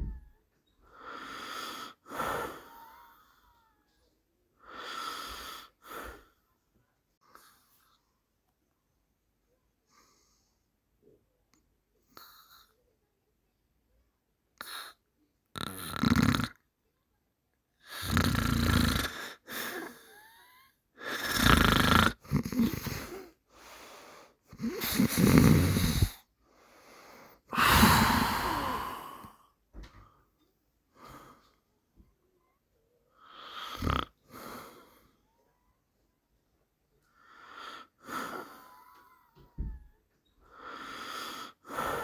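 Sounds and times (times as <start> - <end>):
faint breaths: 9.8 - 10.9, 22.4 - 35.9, 37.0 - 42.0
person snoring: 15.6 - 16.5, 17.9 - 20.4, 21.1 - 23.2, 24.5 - 26.2, 27.5 - 29.4, 33.4 - 34.4.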